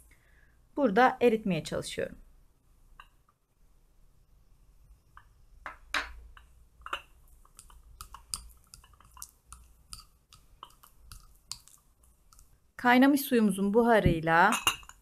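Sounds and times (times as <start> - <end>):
metal spoon clinking glass bowl: 6.8 - 12.4, 14.5 - 15.0.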